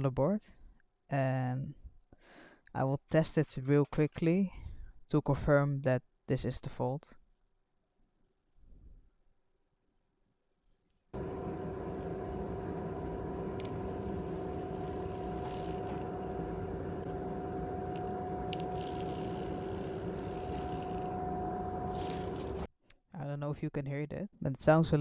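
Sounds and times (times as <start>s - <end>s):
rattly vibration motor buzzing: 11.2s - 22.7s.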